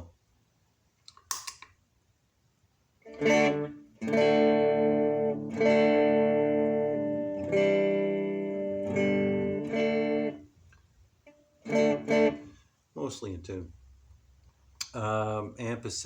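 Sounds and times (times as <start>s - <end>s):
electric guitar chords ringing: 3.1s - 10.4s, 11.6s - 12.5s.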